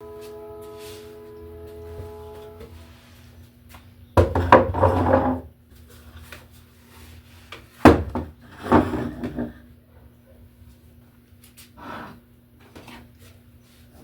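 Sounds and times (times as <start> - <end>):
faint steady hum: 0.0 - 14.0
objects knocking and rubbing: 4.2 - 5.5, 7.9 - 9.6.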